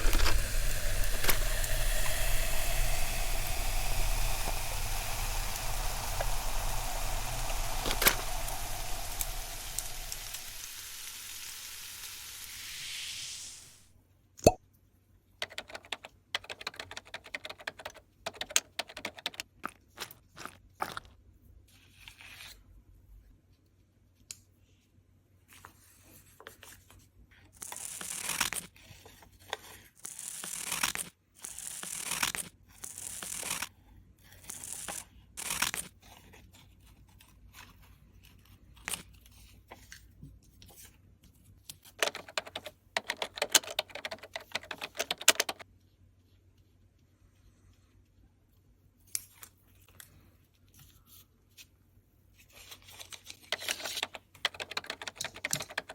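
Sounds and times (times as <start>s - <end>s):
paper ripping: 34.5s - 36.2s.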